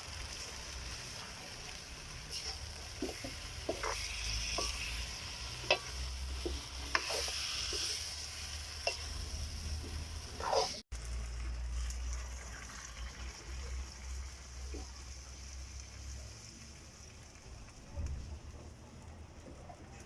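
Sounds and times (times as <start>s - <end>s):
bananas sizzling in a pot: 0.0s - 20.0s
spoon knocking and scraping pot: 5.6s - 7.9s.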